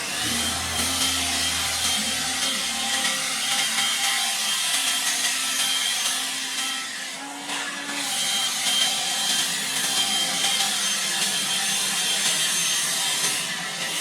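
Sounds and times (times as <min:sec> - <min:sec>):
leaf blower running: 0:00.0 - 0:06.2.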